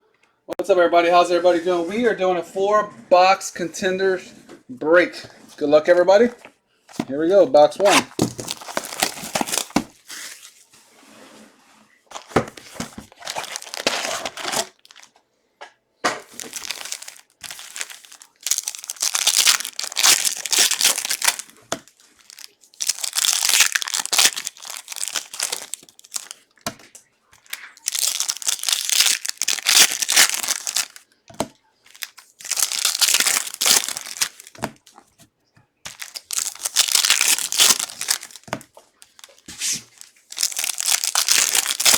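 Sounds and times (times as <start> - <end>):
plastic wrapping tearing and crinkling: 7.8 - 10.6, 12.1 - 15.1, 16.2 - 26.8, 27.4 - 31.1, 31.9 - 35.0, 35.9 - 41.9.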